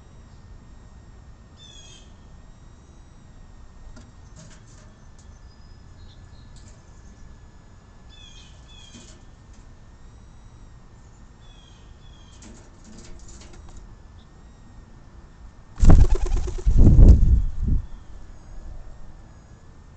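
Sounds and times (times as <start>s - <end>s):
small birds chirping: 8.1s - 9.1s.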